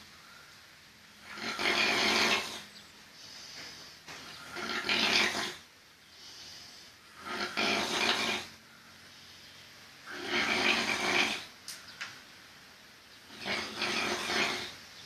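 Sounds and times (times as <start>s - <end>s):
quiet breaths: 0.0s - 12.0s
person snoring: 1.2s - 2.6s, 4.3s - 5.6s, 6.3s - 8.6s, 10.0s - 11.5s, 13.3s - 14.8s.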